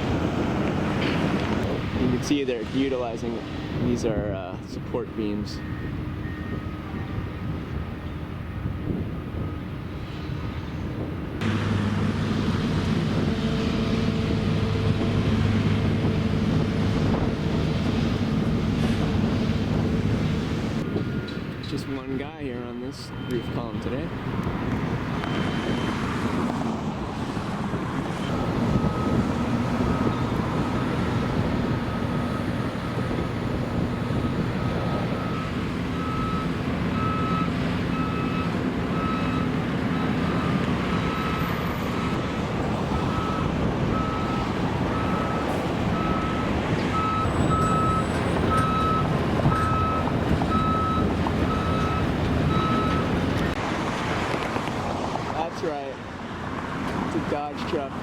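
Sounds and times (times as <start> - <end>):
heavy machinery rumble: 0.0 - 22.2, 23.0 - 55.7
reversing alarm beeping: 5.6 - 9.8, 19.2 - 26.2, 28.2 - 42.2, 42.9 - 53.5.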